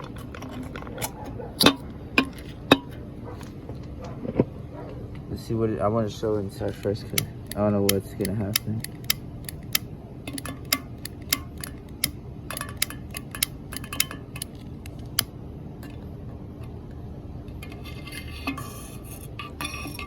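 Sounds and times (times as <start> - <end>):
sharp clicks and metallic clinks: 6.7 - 16.1.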